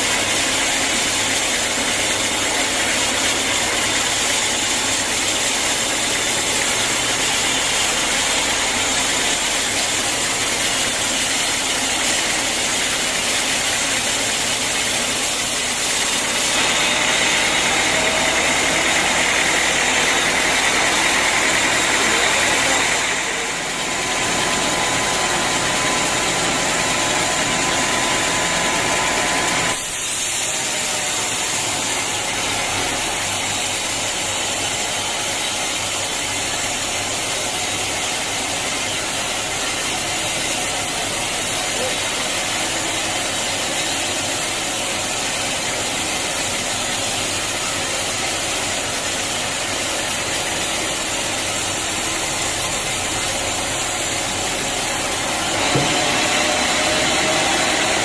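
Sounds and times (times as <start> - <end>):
sawmill machinery running: 0.0 - 58.0.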